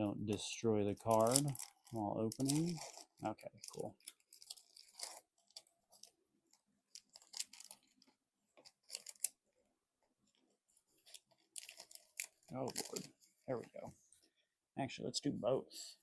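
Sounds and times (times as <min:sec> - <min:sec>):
wrapper crinkling and tearing: 0:00.9 - 0:06.2, 0:06.9 - 0:09.4, 0:11.0 - 0:13.2.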